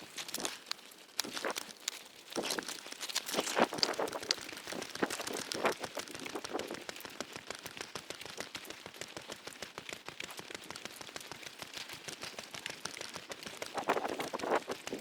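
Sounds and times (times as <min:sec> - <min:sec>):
rain pattering: 0:00.0 - 0:15.0.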